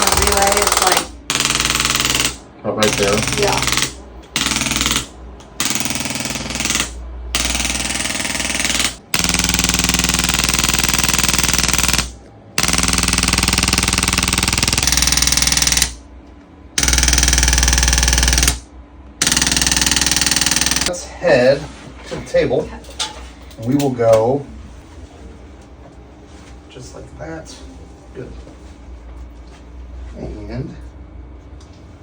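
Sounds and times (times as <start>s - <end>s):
rapid mechanical impulses: 0.0s - 16.0s, 16.8s - 20.9s.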